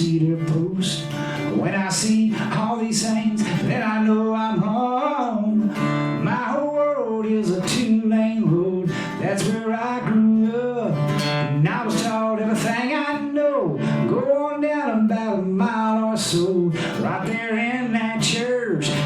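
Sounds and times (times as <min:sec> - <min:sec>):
man singing: 0:00.0 - 0:19.0
strummed acoustic guitar: 0:00.0 - 0:19.0.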